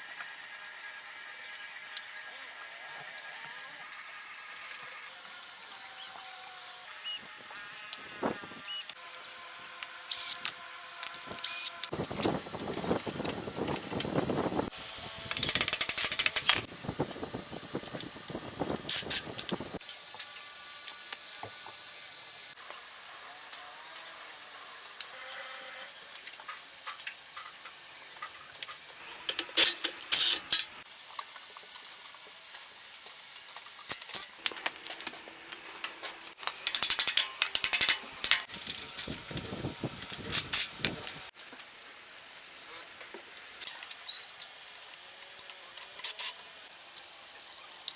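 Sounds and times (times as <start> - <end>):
metal tools clicking and clinking: 15.2 - 16.7, 25.7 - 30.8, 31.7 - 41.3, 43.6 - 47.9.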